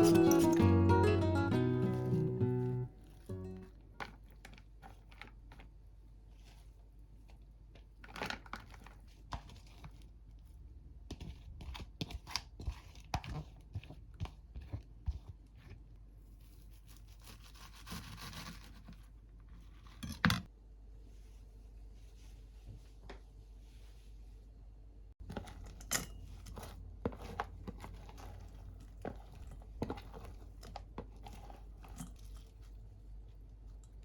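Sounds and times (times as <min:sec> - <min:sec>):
rustling and tearing: 0:16.2 - 0:20.0.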